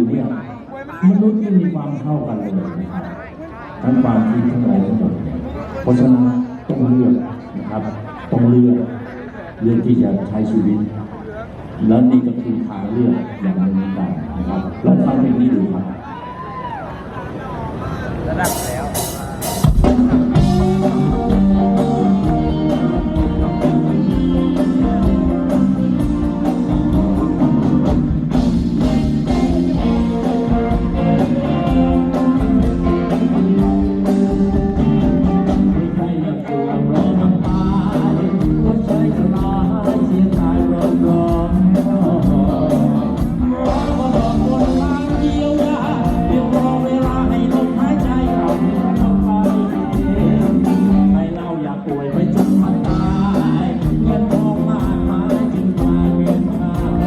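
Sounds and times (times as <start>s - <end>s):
electric guitars: 18.1s - 57.0s
bass: 18.3s - 57.0s
drums beat: 18.4s - 35.8s, 37.4s - 51.2s, 52.3s - 57.0s
person singing: 20.1s - 57.0s.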